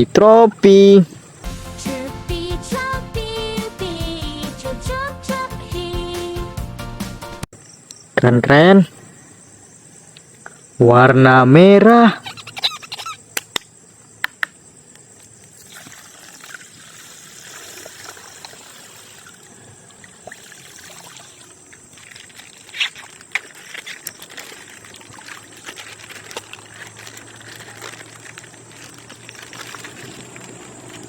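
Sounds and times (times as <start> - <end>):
water pouring and trickling: 15.5 - 31.0.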